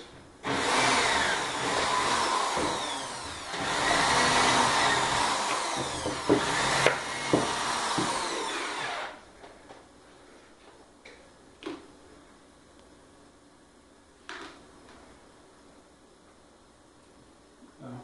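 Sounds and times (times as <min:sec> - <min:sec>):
power drill running: 0:00.4 - 0:09.2.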